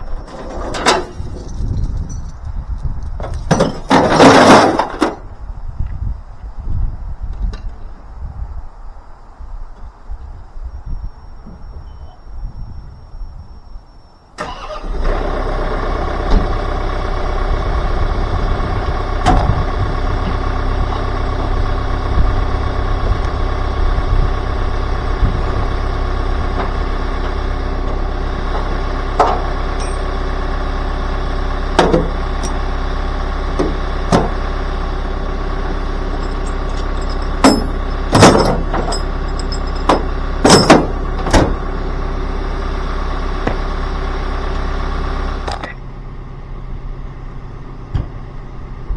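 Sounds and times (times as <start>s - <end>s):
sharp knocks and clanks: 3.2s - 5.2s, 27.9s - 30.1s, 31.8s - 32.6s, 33.6s - 34.4s, 36.2s - 41.6s
engine running: 14.2s - 48.9s.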